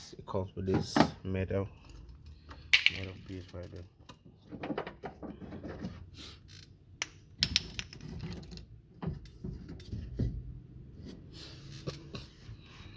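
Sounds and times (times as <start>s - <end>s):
metal parts clicking and rattling: 1.9s - 5.7s, 6.4s - 9.9s.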